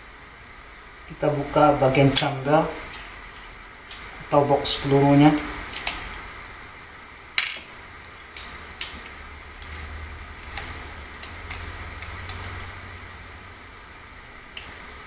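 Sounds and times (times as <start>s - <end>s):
metal parts clicking and clinking: 7.4s - 7.7s.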